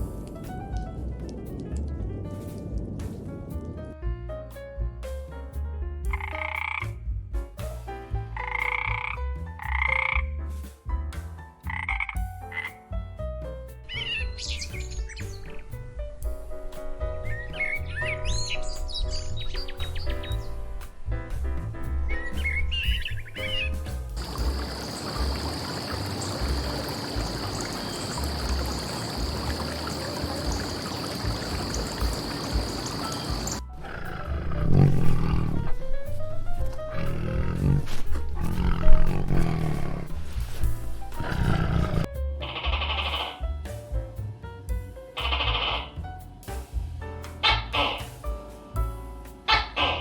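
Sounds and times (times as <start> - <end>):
low rumbles: 0.0 - 48.2
frog croaking: 6.1 - 6.9, 8.4 - 10.2, 11.7 - 12.7, 24.2 - 35.8, 41.2 - 43.4, 45.2 - 45.9, 47.4 - 48.1, 49.5 - 50.0
running water hiss: 22.4 - 42.1.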